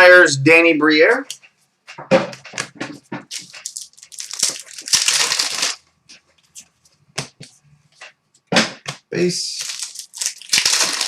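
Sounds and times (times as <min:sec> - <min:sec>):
wrapper crinkling and rustling: 0:02.6 - 0:05.9, 0:09.4 - 0:11.0.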